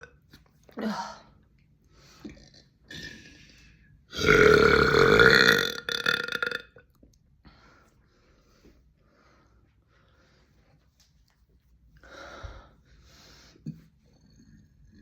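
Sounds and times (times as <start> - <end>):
loud burp: 4.1 - 6.9
faint breathing: 7.4 - 10.8, 12.0 - 13.9.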